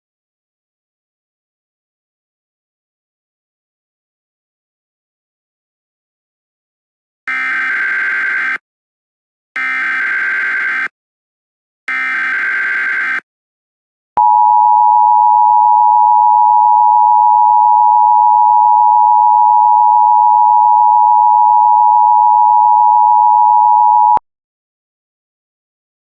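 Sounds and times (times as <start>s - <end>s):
buzzy digital data burst: 11.9s - 13.2s.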